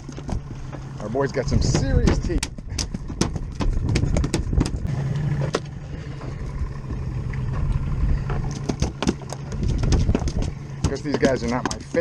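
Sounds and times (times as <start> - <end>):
knocks and clatter on deck: 0.0 - 0.8, 1.6 - 4.9, 8.3 - 12.0
boat engine idling: 0.0 - 12.0.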